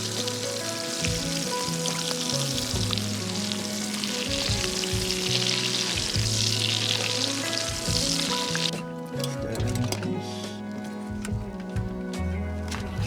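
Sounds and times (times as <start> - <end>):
steak sizzling: 0.0 - 13.0.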